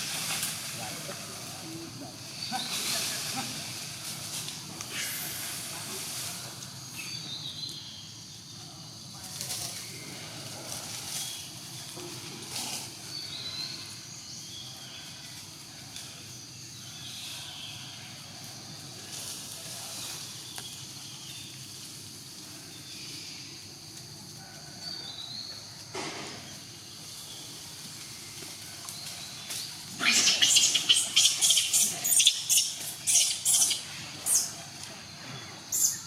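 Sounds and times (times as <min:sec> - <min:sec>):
steady high hiss: 0:00.0 - 0:24.5, 0:25.1 - 0:36.0.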